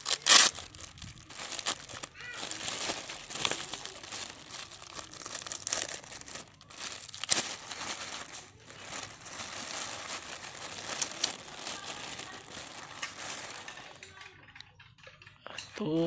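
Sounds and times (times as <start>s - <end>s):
packaging crinkling and tearing: 0.0s - 14.3s.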